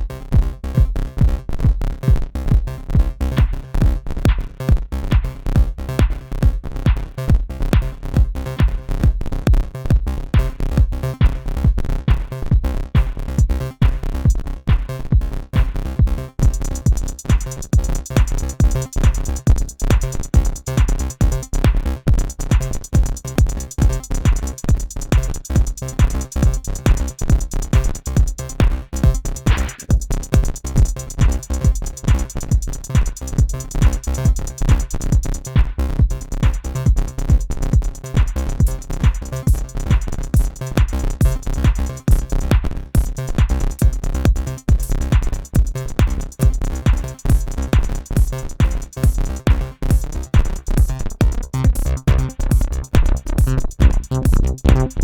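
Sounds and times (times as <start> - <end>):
drum machine beat: 0.0 - 55.0
heavy bass: 0.0 - 55.0
synthesizer parts: 48.2 - 55.0.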